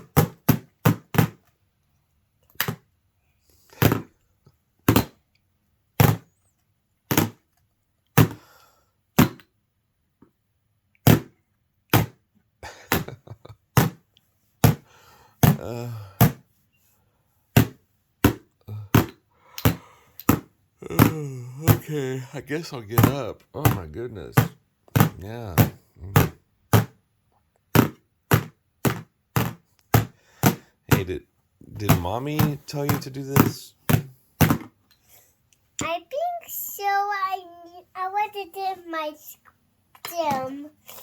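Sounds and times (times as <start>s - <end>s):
faint voice sounds: 15.6s - 16.2s, 20.8s - 22.4s.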